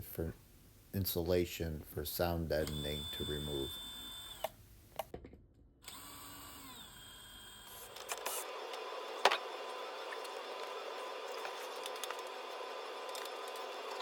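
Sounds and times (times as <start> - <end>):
power tool cutting drywall: 5.9 - 14.0.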